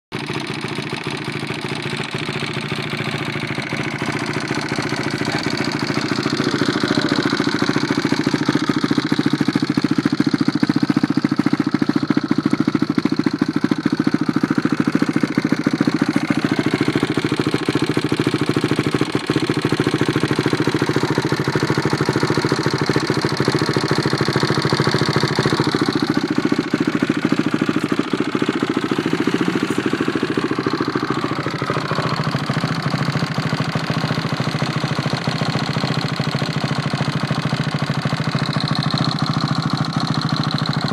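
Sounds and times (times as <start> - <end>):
motorbike engine idling: 0.1 - 40.9.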